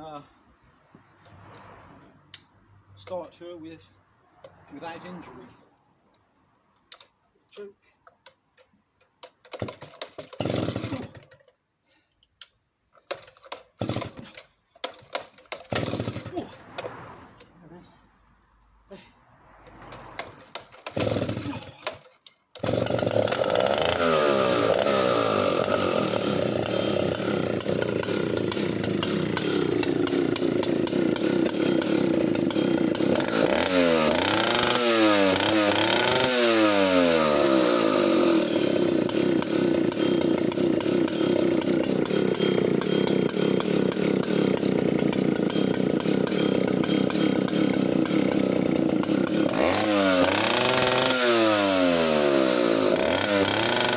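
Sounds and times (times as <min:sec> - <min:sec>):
chainsaw pull-starter: 0:06.9 - 0:17.6, 0:19.6 - 0:53.9
chainsaw idling and revving: 0:09.2 - 0:11.5, 0:13.1 - 0:16.9, 0:20.0 - 0:53.9.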